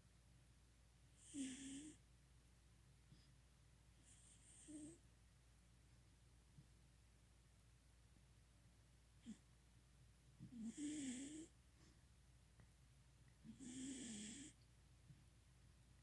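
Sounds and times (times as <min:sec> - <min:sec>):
cat snoring faintly: 0:01.1 - 0:02.0, 0:04.0 - 0:05.0, 0:09.2 - 0:09.5, 0:10.4 - 0:11.6, 0:13.4 - 0:14.6.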